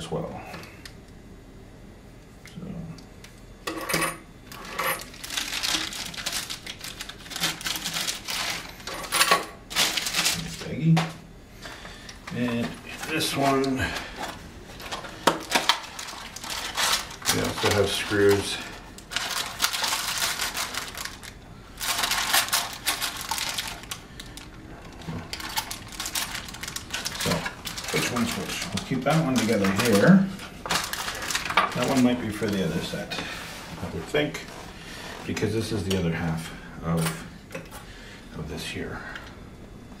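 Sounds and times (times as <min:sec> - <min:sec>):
plastic bag crinkling: 0:04.6 - 0:08.9, 0:09.7 - 0:11.0, 0:12.3 - 0:33.2.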